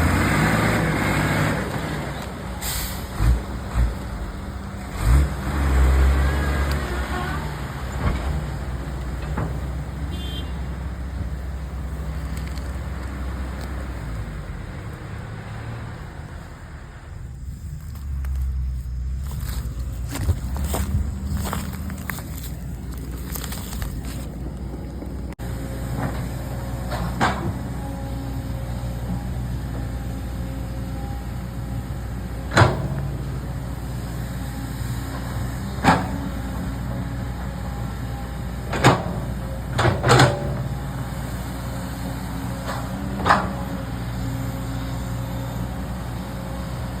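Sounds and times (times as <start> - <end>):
engine running steadily: 0.0 - 47.0
sharp knocks and clunks: 8.0 - 10.0, 26.0 - 27.7, 32.5 - 33.2, 35.8 - 36.3, 38.6 - 40.7, 42.6 - 43.7.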